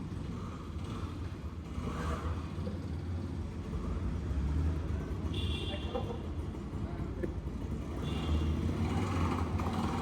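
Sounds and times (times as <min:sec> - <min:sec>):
vehicle engines rumbling: 0:00.0 - 0:05.3, 0:05.9 - 0:10.0.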